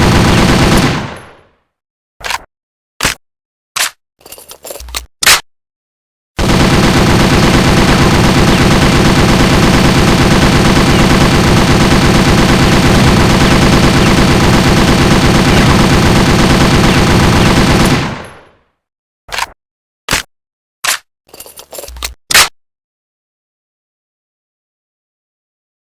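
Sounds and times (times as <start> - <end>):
machine gun burst: 0.0 - 1.3, 6.4 - 18.4.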